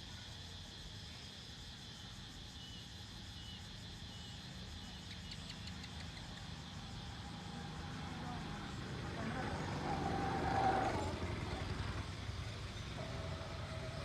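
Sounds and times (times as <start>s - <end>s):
insect drone: 0.0s - 14.0s
chirps: 3.4s - 6.8s
distant vehicle traffic: 4.2s - 14.0s.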